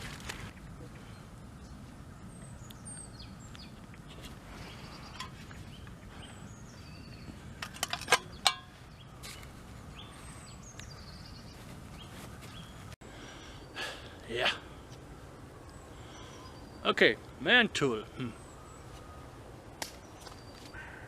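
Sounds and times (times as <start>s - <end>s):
faint outdoor background: 0.0s - 21.0s
birds chirping: 0.4s - 21.0s.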